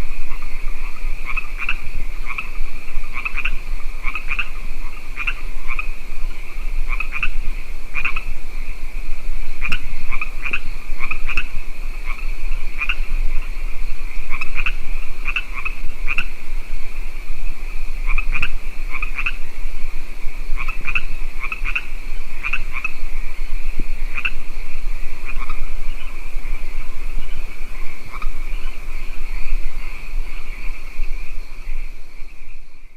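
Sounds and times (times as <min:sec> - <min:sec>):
frogs croaking: 0:00.0 - 0:32.9
insect chorus: 0:00.0 - 0:32.9.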